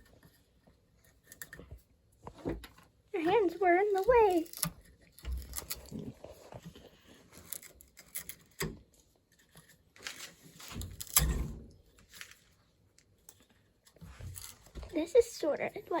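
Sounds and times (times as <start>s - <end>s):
tool scraping wood: 3.3s - 11.2s
wood cracking and snapping: 3.9s - 6.7s, 10.0s - 12.4s.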